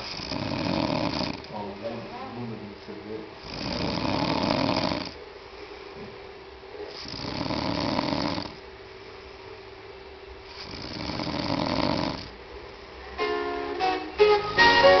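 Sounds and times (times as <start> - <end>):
pet snoring: 0.0 - 1.6, 3.4 - 5.2, 6.9 - 8.6, 10.5 - 12.4
plucked-string music: 13.2 - 15.0.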